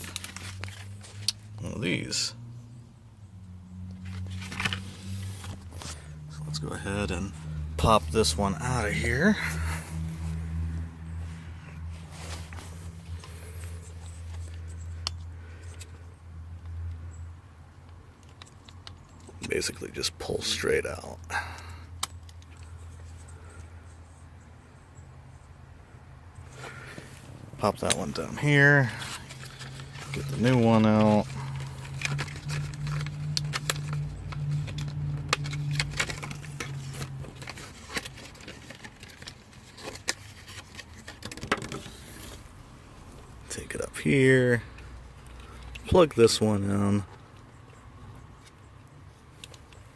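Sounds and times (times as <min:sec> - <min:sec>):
clicks and rustling from handling: 0:00.0 - 0:01.4, 0:26.7 - 0:42.5.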